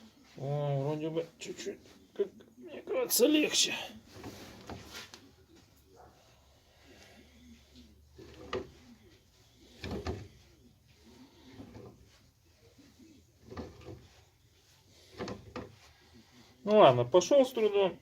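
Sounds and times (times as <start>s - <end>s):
pulley creaking and clunking: 8.1s - 8.9s, 9.6s - 12.3s, 13.4s - 14.3s, 14.9s - 15.9s.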